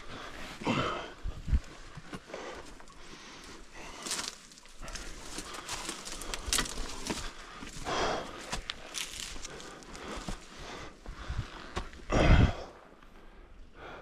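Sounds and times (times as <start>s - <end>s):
person breathing heavily: 0.0s - 14.0s
footsteps: 3.9s - 12.0s.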